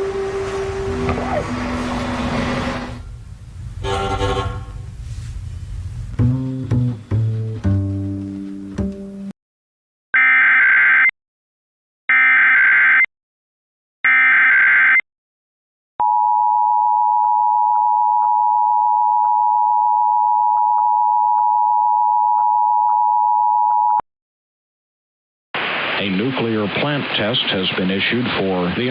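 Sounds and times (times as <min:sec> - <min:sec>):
two-tone attention signal: 0:03.8 - 0:04.7.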